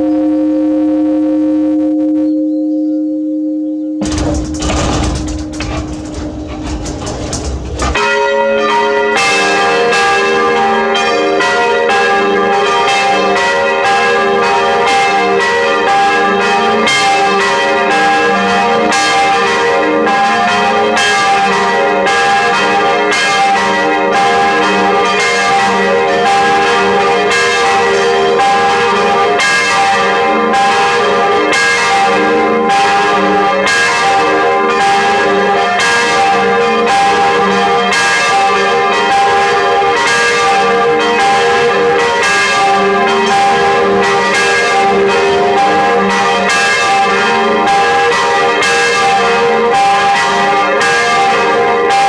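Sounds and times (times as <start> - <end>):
church bells ringing in a peal: 0.0 - 0.5, 3.6 - 52.0.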